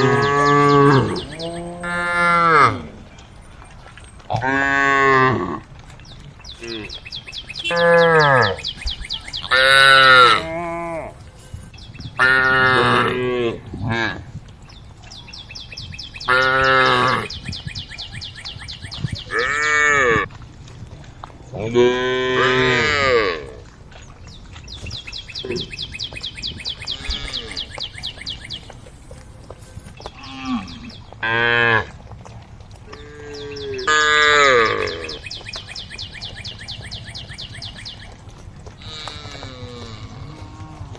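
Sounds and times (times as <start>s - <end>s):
cows mooing: 0.0s - 3.3s, 4.3s - 5.8s, 6.6s - 11.2s, 12.1s - 14.3s, 16.2s - 17.5s, 19.3s - 20.3s, 21.6s - 23.7s, 26.8s - 28.2s, 30.0s - 32.1s, 32.8s - 35.9s, 36.5s - 40.9s.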